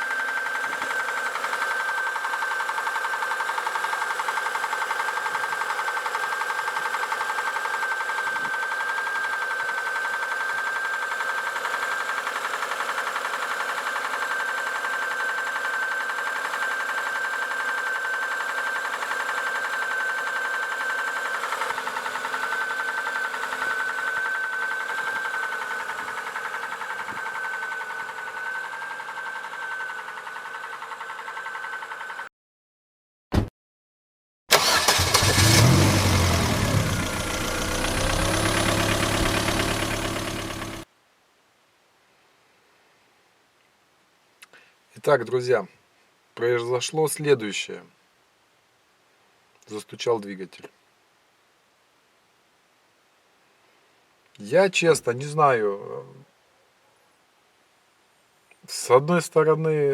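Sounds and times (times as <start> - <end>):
car engine knocking: 35.4 - 40.8
high whine: 35.6 - 40.8.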